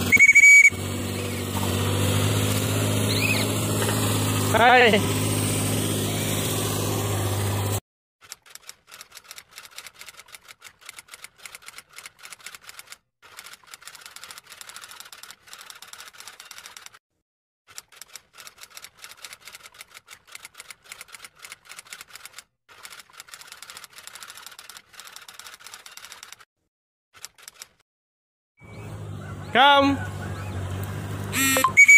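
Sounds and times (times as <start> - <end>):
loud steady hum: 31.2 - 31.9.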